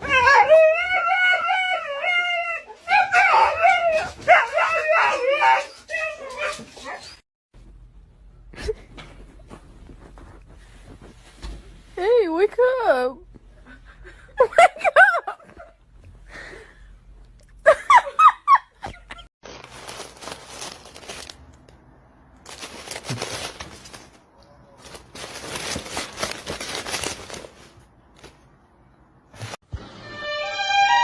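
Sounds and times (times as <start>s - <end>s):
crinkling rustling: 19.4s - 28.6s.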